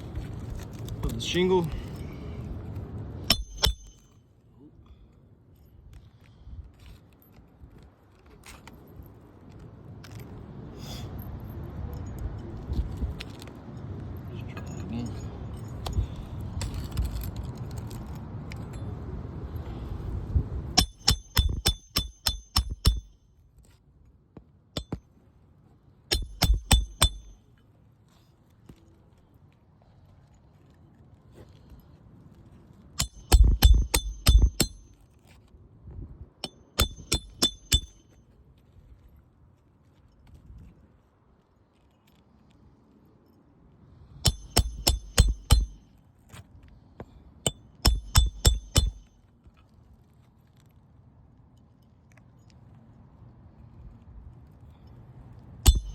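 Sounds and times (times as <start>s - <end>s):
hammer striking metal: 3.3s - 4.2s, 20.8s - 23.2s, 24.8s - 25.0s, 26.1s - 27.4s, 33.0s - 35.0s, 36.4s - 38.0s, 44.2s - 45.9s, 47.5s - 49.1s, 55.6s - 55.9s.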